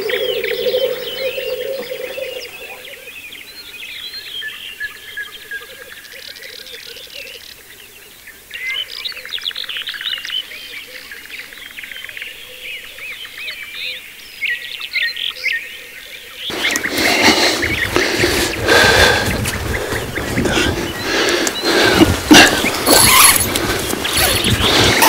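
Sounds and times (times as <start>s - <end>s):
grouse bubbling cooing: 0.0s - 2.9s
small birds chirping and trilling: 0.0s - 25.0s.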